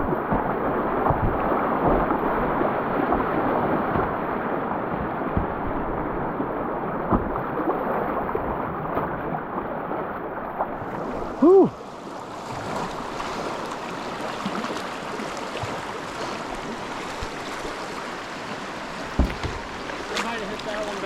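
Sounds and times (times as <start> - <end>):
whitewater rapids rushing: 10.7 - 21.0
short knocks: 19.0 - 20.3.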